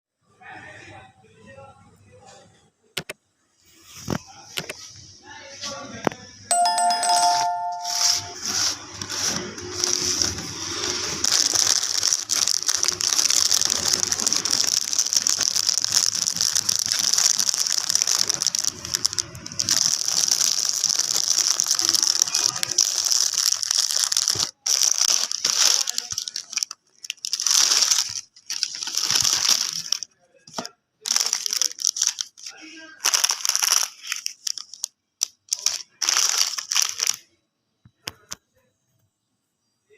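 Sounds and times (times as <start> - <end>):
plastic packaging crinkling: 6.5 - 37.3.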